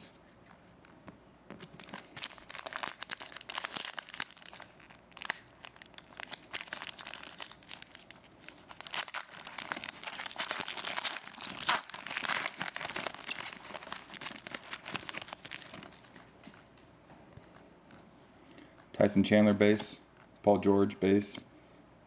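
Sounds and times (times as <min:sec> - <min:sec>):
wrapper tearing and crinkling: 0:01.6 - 0:16.2.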